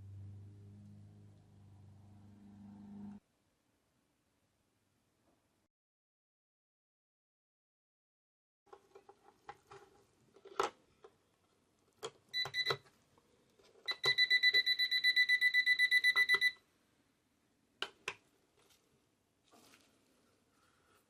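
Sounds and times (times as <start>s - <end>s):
digital alarm clock beeping: 12.4s - 12.8s, 13.9s - 16.6s.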